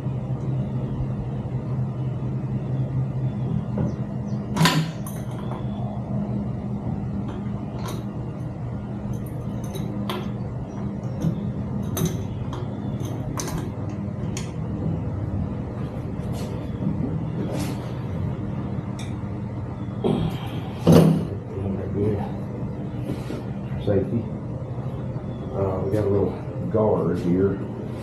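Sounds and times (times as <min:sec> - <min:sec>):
steady low hum: 0:00.0 - 0:28.0
tools and parts clattering: 0:04.6 - 0:05.7, 0:09.1 - 0:10.4, 0:11.1 - 0:13.9.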